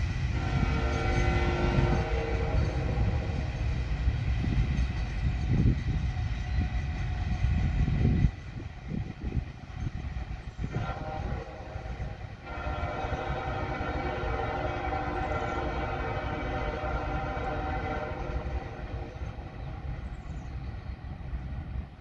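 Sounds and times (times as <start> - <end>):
low rumble of train: 0.0 - 22.0
locomotive air horn blast: 0.3 - 3.6, 10.6 - 19.8.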